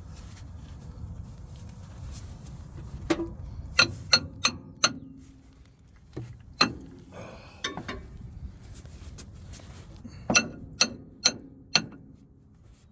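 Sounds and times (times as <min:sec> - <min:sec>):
tools striking metal: 0:03.8 - 0:05.2, 0:06.6 - 0:07.0, 0:10.3 - 0:12.2.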